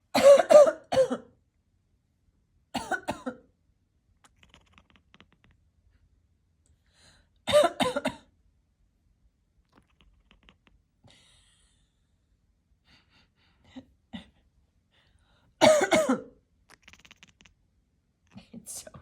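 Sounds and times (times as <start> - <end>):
cat coughing and hacking: 0.1 - 1.4, 2.7 - 3.5, 7.5 - 8.3, 15.6 - 17.4.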